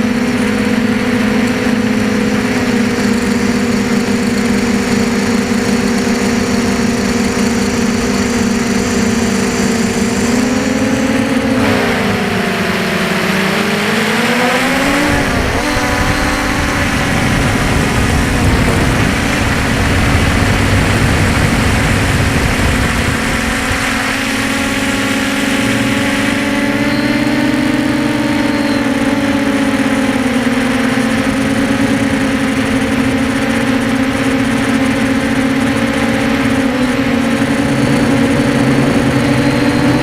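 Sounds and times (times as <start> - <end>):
drone propellers humming: 0.0 - 40.0
low rumble: 14.8 - 26.6.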